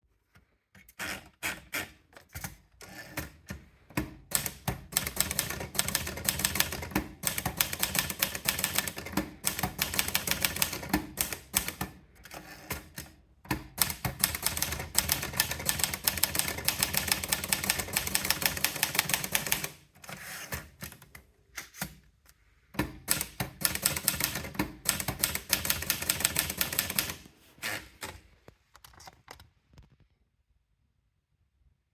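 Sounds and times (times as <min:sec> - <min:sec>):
typewriter keys clacking: 0:04.2 - 0:19.8, 0:23.0 - 0:27.3.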